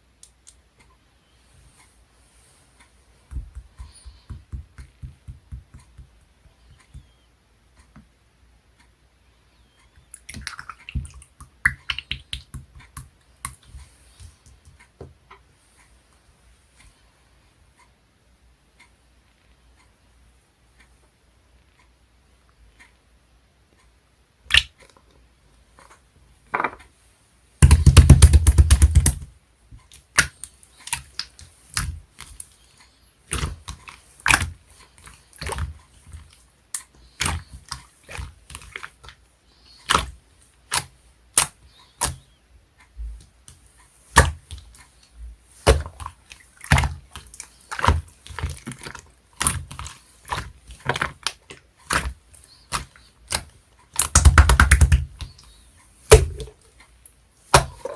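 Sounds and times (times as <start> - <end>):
slime sticky clicks and pops: 24.5 - 24.7, 52.7 - 55.3
slime squelching crackles: 29.8 - 42.4, 43.2 - 57.9.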